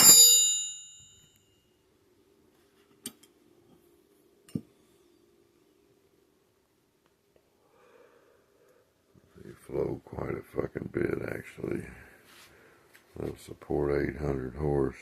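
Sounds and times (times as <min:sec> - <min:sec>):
metal clang ringing: 0:00.0 - 0:01.4.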